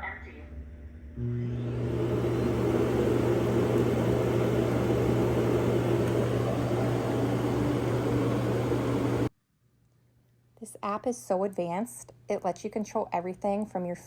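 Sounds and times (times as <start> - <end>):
vacuum suction rushing air: 1.4 - 9.3.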